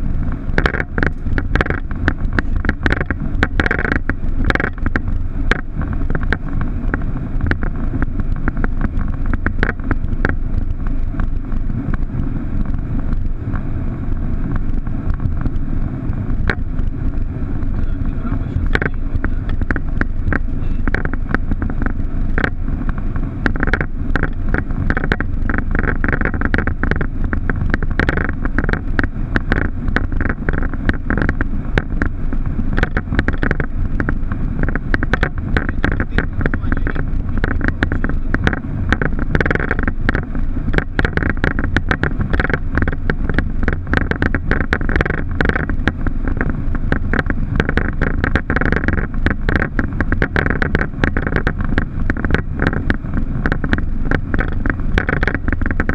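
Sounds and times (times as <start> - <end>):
aircraft engine and airflow rumble: 0.0 - 55.9
quick clicks and rattles: 0.6 - 11.3, 17.8 - 55.9.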